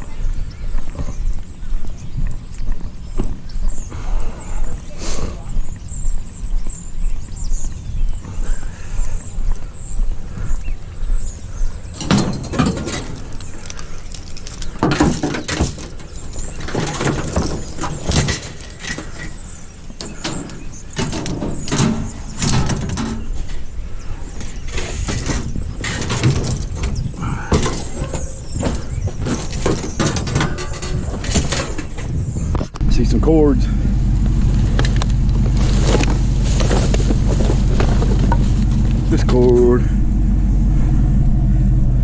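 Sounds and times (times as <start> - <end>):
low rumble: 0.0 - 14.7, 32.3 - 42.0
junk clattering and scraping: 11.1 - 42.0.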